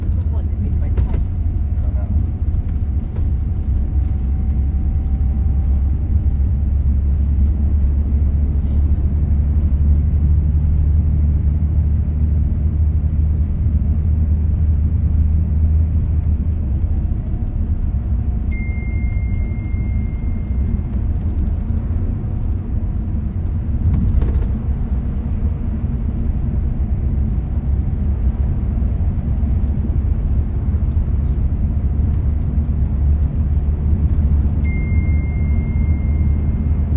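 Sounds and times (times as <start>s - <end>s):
vehicle engine and tyre rumble: 0.0s - 36.9s
short high beep: 18.6s - 20.5s, 34.6s - 36.7s.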